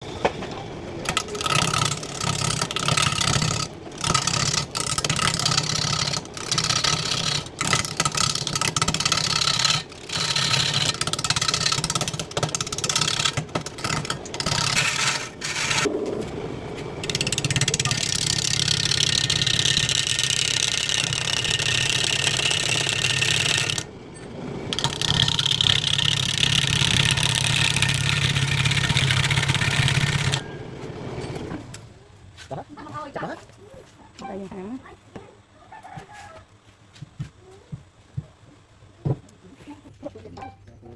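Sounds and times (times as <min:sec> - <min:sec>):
electric power tool cutting wood: 0:01.0 - 0:15.9, 0:17.0 - 0:23.9, 0:24.7 - 0:30.4.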